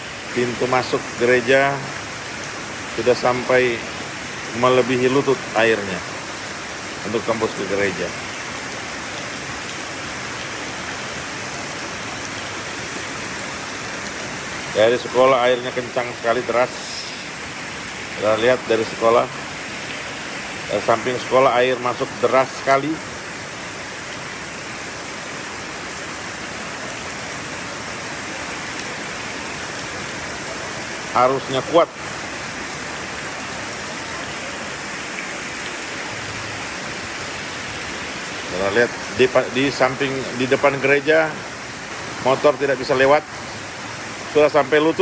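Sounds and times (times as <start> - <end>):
floodwater rushing: 0.0 - 45.0
heavy rain falling: 0.0 - 45.0.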